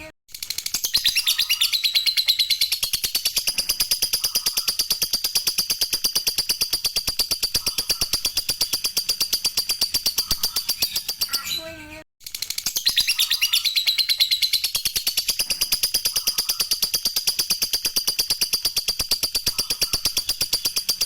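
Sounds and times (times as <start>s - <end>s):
lovebird chattering song: 0.8s - 11.8s, 12.4s - 21.0s.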